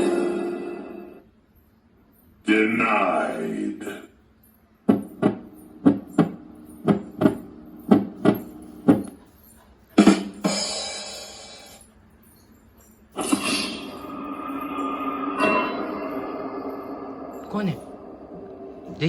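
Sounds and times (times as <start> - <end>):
cymbal crash ringing: 0.0 - 1.2, 13.2 - 19.0.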